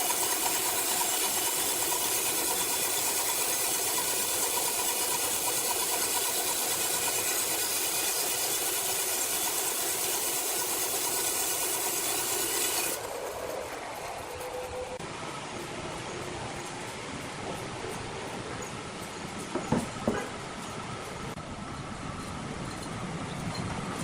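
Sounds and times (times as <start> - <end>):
sawmill machinery hissing: 0.0 - 19.8
low machine hum: 12.7 - 24.0.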